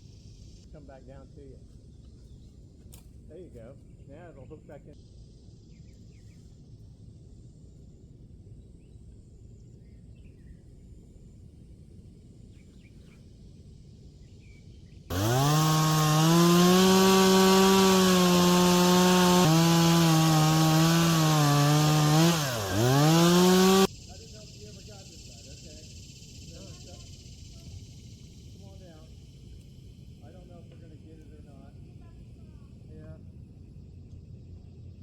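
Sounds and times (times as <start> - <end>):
faint outdoor background: 0.0 - 35.0
chainsaw running at high revs: 15.1 - 23.9.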